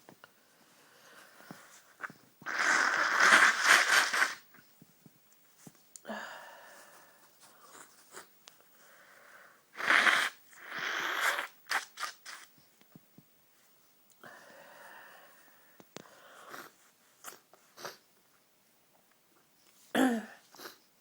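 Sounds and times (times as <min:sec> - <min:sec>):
short sniffs: 0:09.8 - 0:12.5
person sneezing: 0:19.9 - 0:20.8.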